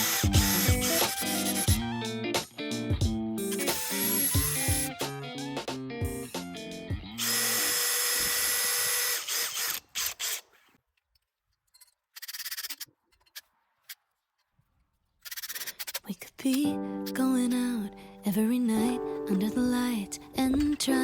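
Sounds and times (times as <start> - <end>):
power drill whining: 0.0 - 1.7, 3.6 - 4.9, 7.2 - 10.8
guitar music: 0.0 - 7.2, 16.6 - 21.0.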